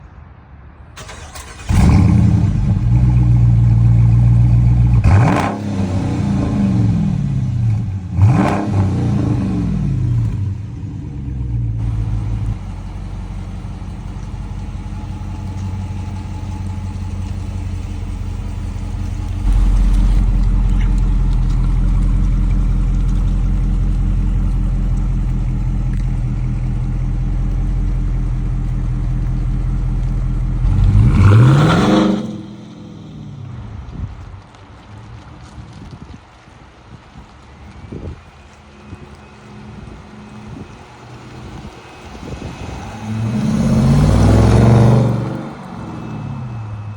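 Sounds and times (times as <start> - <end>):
car engine starting and idling: 0.9 - 35.9, 38.4 - 46.9
engine throttle blips: 1.0 - 33.9.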